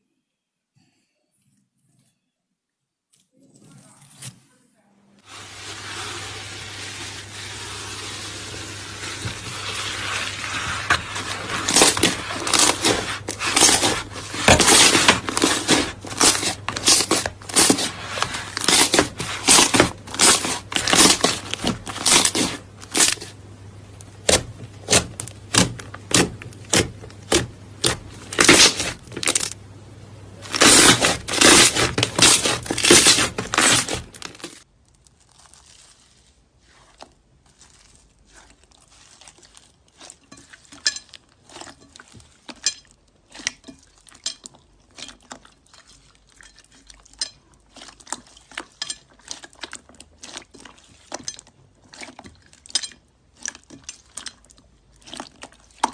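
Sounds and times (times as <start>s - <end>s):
slime crackly stretching: 30.4s - 42.6s.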